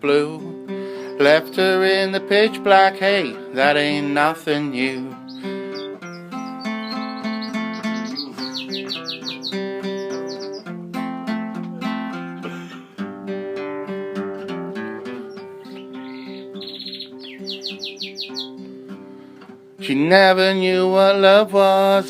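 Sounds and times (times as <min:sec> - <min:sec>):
acoustic guitar playing: 0:00.0 - 0:22.0
canary chirping: 0:04.0 - 0:10.7, 0:15.0 - 0:18.8.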